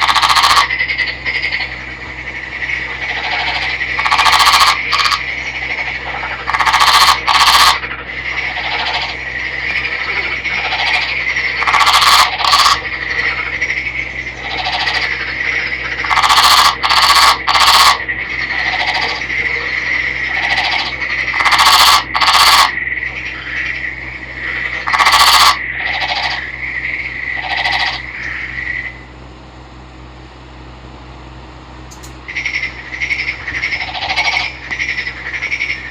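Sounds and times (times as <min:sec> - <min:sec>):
frog croaking: 0:00.0 - 0:29.1, 0:32.3 - 0:35.9
high-pitched drone: 0:00.0 - 0:29.1, 0:31.9 - 0:35.9.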